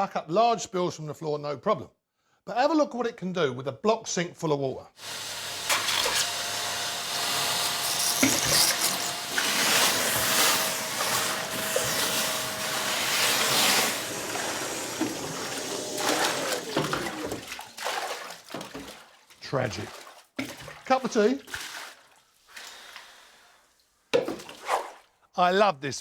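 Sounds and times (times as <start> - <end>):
vacuum motor whine: 5.0 - 17.5
water rushing up vacuum hose: 5.0 - 18.9.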